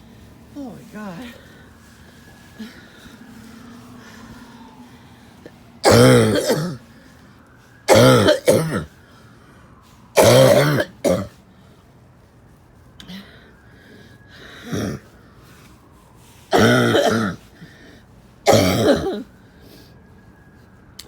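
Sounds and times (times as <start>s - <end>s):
person coughing harshly: 5.8s - 6.8s, 7.9s - 8.9s, 10.2s - 11.3s, 16.5s - 17.4s, 18.5s - 19.3s.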